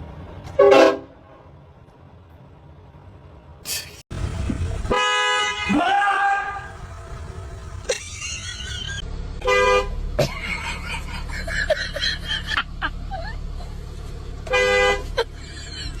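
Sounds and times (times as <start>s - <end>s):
low rumble of traffic: 0.0s - 16.0s
car horn honking: 0.6s - 1.1s, 4.2s - 8.8s, 9.4s - 10.0s, 14.4s - 15.2s.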